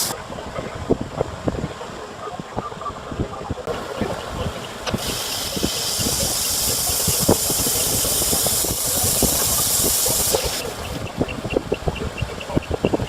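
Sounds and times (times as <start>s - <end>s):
high-pitched air hiss: 0.0s - 0.2s, 4.7s - 11.1s.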